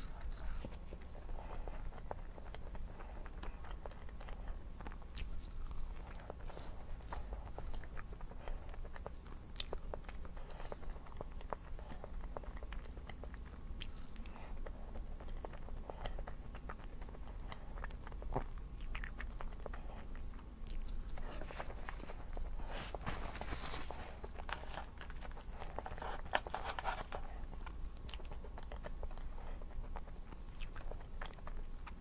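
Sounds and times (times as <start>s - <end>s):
low steady hum: 0.0s - 32.0s
person biting and chewing: 15.2s - 32.0s.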